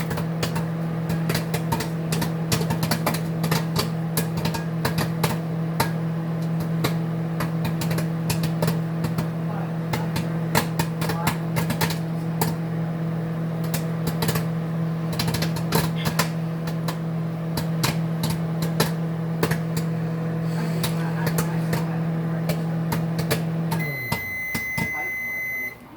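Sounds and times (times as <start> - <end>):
microwave oven humming: 0.0 - 25.9
popcorn popping: 0.0 - 25.9
microwave long beep: 23.5 - 25.9.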